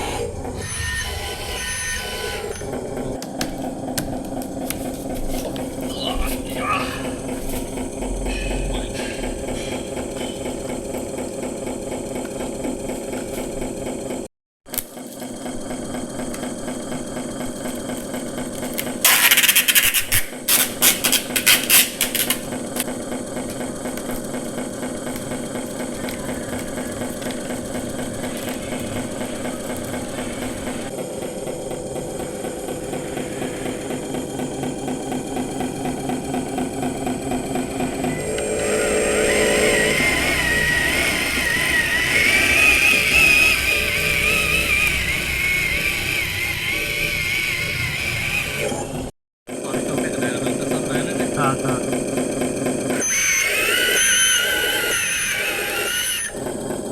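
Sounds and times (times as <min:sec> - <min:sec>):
loud rasping noise: 0:00.0 - 0:03.2, 0:03.9 - 0:14.1, 0:15.6 - 0:56.9
electric motor and gearbox whirring: 0:00.0 - 0:56.9.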